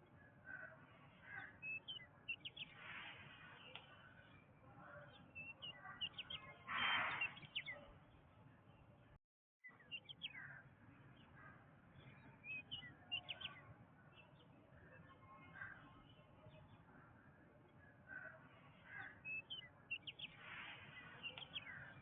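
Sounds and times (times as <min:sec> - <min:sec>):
birds chirping and whistling: 0:05.3 - 0:07.8.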